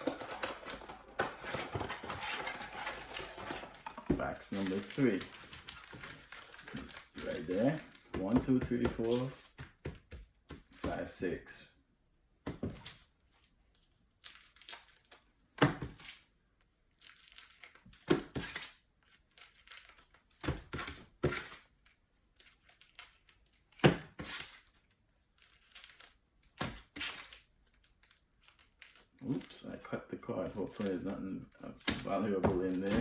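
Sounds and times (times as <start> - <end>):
cardboard and plastic tearing: 0.0 - 9.4, 30.3 - 33.0.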